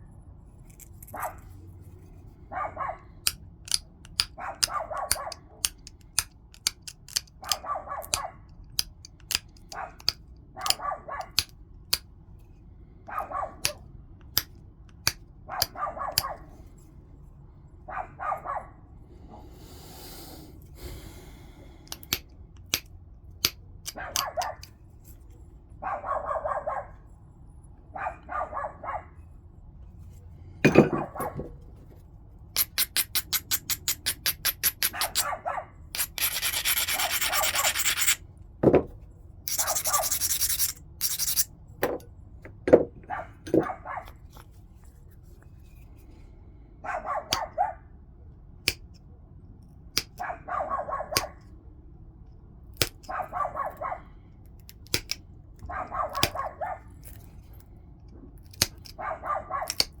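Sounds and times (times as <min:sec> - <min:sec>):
stone knapping clicks and taps: 0:03.2 - 0:12.1, 0:13.6 - 0:15.8, 0:21.8 - 0:24.7, 0:32.6 - 0:35.2, 0:54.7 - 0:55.2, 0:59.7 - 1:00.0
stone rasping abrasion: 0:36.0 - 0:38.2, 0:39.5 - 0:41.5.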